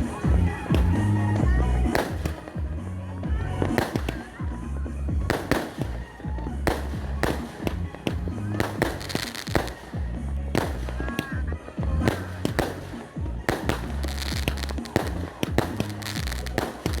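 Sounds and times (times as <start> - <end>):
fireworks bangs: 0.0 - 17.0
music with bass line: 0.0 - 17.0.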